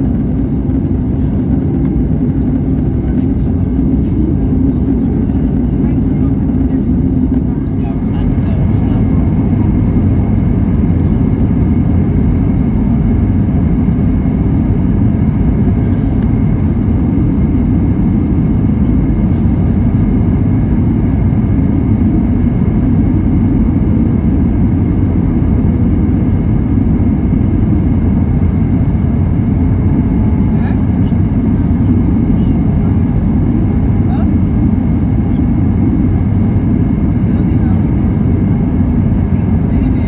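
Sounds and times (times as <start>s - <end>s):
jet engine and airflow rumble: 0.0s - 40.0s.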